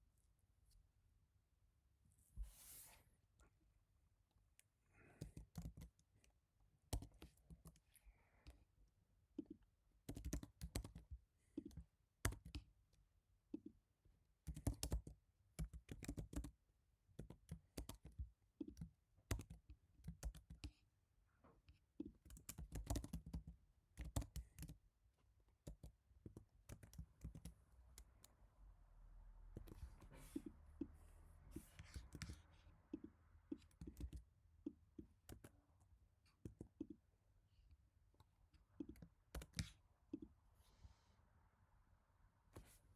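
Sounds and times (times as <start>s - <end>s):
keyboard typing: 5.1s - 6.0s, 6.9s - 7.8s, 9.4s - 12.7s, 14.5s - 16.6s, 17.2s - 20.8s, 22.0s - 24.8s, 25.6s - 28.3s, 29.5s - 30.9s, 31.5s - 35.6s, 36.4s - 37.0s, 38.8s - 40.3s.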